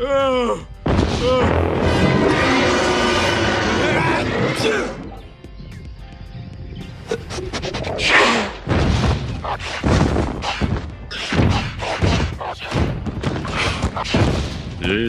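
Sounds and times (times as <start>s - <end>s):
heavy impact thuds and crashes: 0.8s - 5.2s, 8.6s - 15.0s
low rumble: 1.2s - 5.5s.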